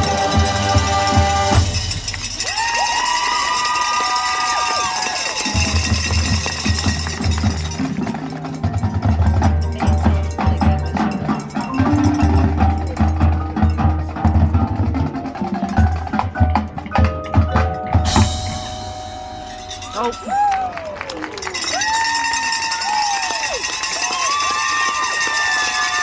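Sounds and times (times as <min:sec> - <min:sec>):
marimba and bells ringing: 0:00.0 - 0:26.0.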